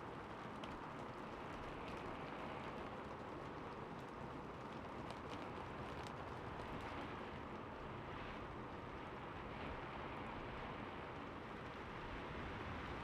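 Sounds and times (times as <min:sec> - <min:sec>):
rain falling on a roof: 0:00.0 - 0:13.0.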